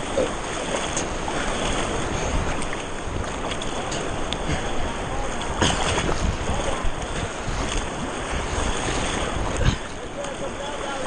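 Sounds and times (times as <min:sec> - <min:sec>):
whitewater rapids rushing: 0:00.0 - 0:11.0
wind on microphone: 0:00.0 - 0:11.0.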